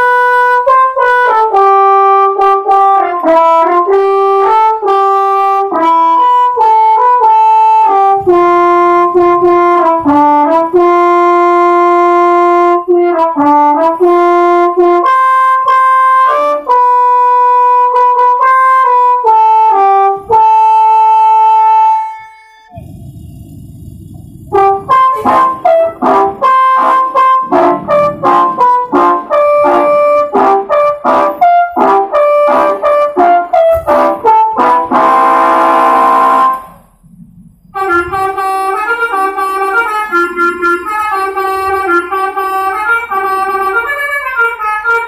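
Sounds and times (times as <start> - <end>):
multi-tone bus air horn melody: 0.0 - 22.8, 24.5 - 36.9, 37.8 - 45.0
quiet low noise: 36.4 - 38.8.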